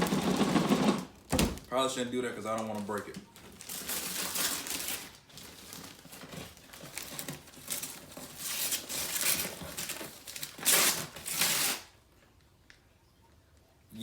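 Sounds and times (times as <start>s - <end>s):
paper tearing and crumpling: 2.4s - 12.0s.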